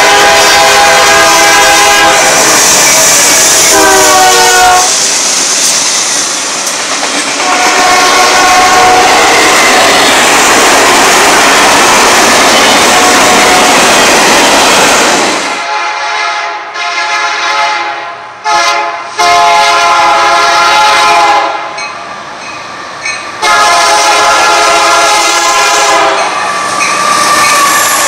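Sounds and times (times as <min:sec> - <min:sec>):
locomotive air horn: 0:00.0 - 0:02.6, 0:03.5 - 0:05.0, 0:07.4 - 0:09.6, 0:15.6 - 0:21.8, 0:23.4 - 0:28.0
passing train rushing: 0:00.0 - 0:28.0.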